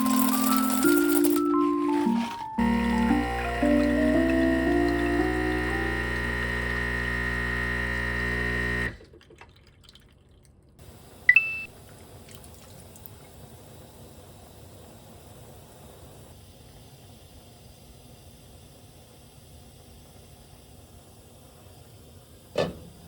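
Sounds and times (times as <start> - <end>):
background music: 0.0 - 6.1
faint hiss: 10.8 - 23.0.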